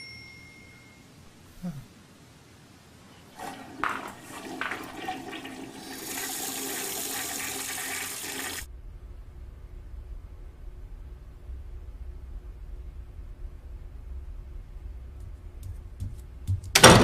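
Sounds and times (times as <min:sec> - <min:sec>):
water rushing: 0:03.3 - 0:08.7
low hum: 0:08.6 - 0:16.8.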